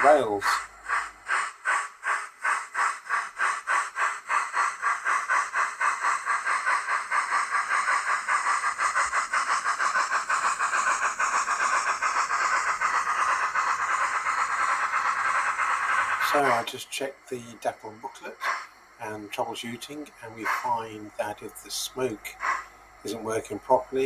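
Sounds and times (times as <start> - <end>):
steam exhaust chuffs from speaker: 8.2 - 24.0.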